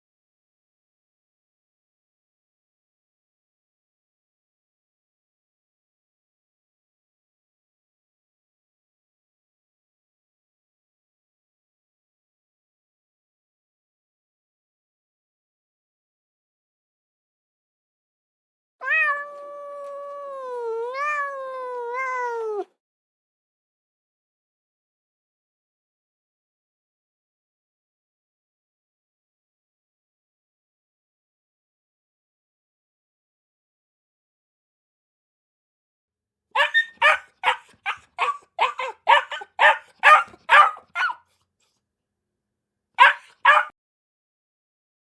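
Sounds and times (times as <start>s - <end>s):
cat meowing: 18.8s - 22.7s, 36.6s - 41.2s, 43.0s - 43.7s
dog barking: 36.6s - 41.2s, 43.0s - 43.8s.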